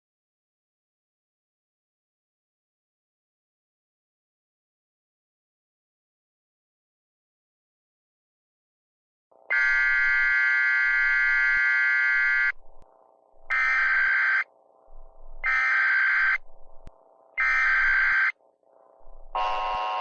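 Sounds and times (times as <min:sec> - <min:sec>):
buzzy data bursts: 0:09.5 - 0:12.6, 0:13.5 - 0:14.4, 0:15.2 - 0:16.8, 0:17.4 - 0:18.3, 0:19.2 - 0:20.0.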